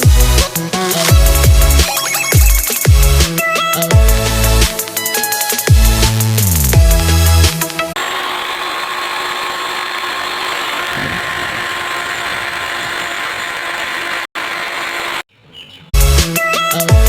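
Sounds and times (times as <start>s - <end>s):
handheld power tool running: 8.0s - 15.3s.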